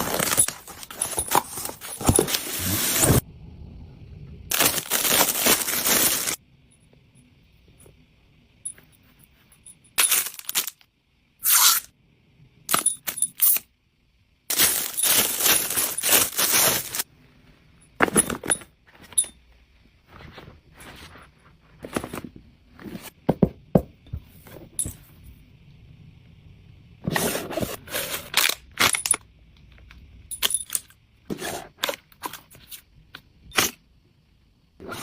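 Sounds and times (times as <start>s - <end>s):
packaging rustling and crinkling: 0.0s - 3.2s, 4.5s - 6.4s, 14.5s - 17.0s.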